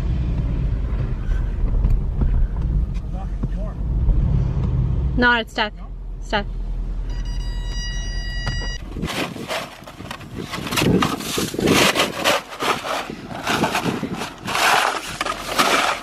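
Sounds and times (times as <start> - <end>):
car engine running with whine: 0.0 - 9.0
scraping and rustling: 8.8 - 16.0.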